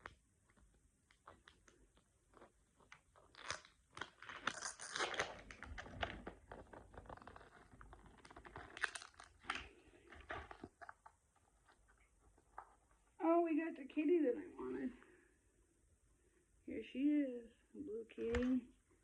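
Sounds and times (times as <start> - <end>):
plastic packaging crinkling: 1.2 - 11.1.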